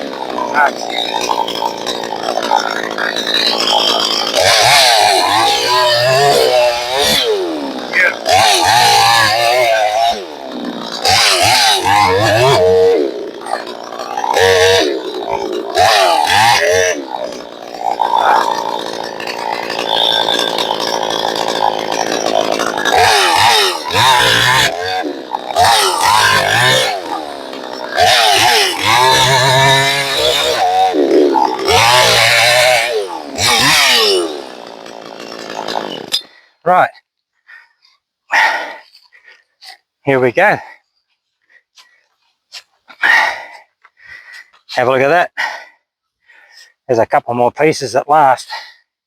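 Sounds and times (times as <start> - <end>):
chainsaw engine revving: 0.0 - 36.4
chainsaw cutting log: 0.0 - 36.7.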